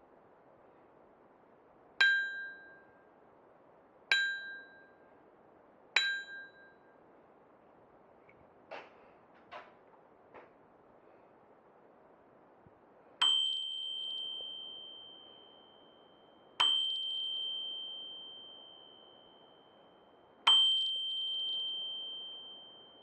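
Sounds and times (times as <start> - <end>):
bicycle bell ringing: 13.2 - 23.0.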